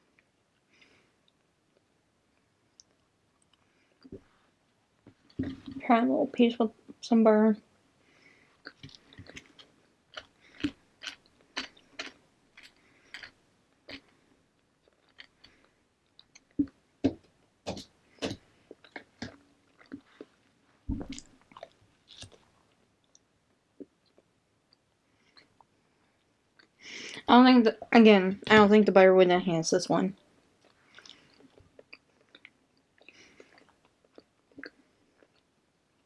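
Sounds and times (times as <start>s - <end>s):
chewing toasted bread crunches: 8.6s - 16.7s, 18.3s - 20.3s, 21.0s - 26.8s, 30.6s - 36.0s.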